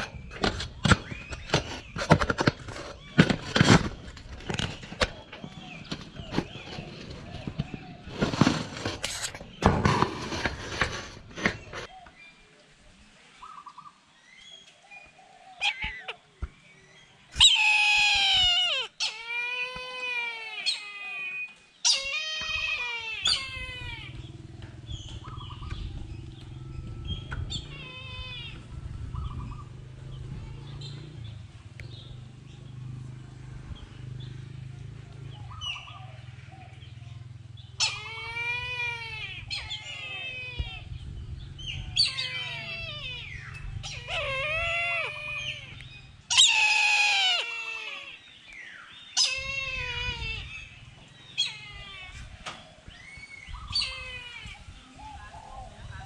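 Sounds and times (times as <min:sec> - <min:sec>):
drawn-out animal cries: 0:17.4 - 0:30.9, 0:37.5 - 0:54.9.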